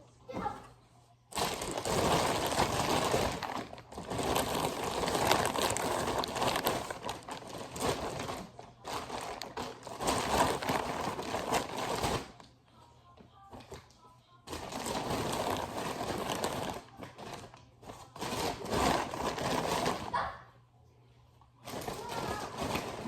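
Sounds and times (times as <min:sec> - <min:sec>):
packaging crinkling and rustling: 0:01.3 - 0:12.4, 0:14.5 - 0:20.1, 0:21.7 - 0:23.0.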